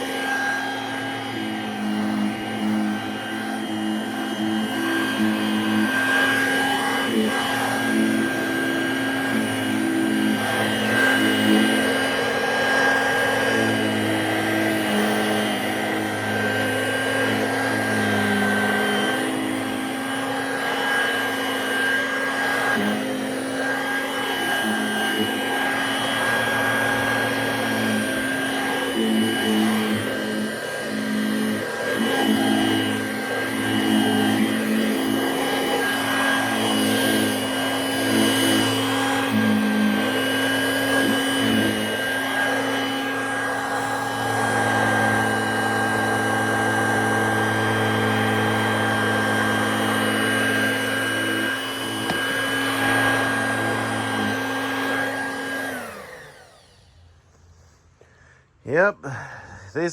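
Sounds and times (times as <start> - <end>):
handheld vacuum running: 0.0 - 59.9.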